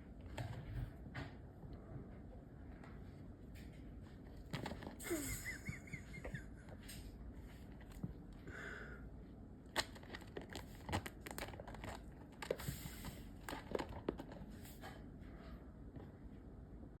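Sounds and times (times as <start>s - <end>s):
small animal chewing crunchily: 9.7s - 14.7s.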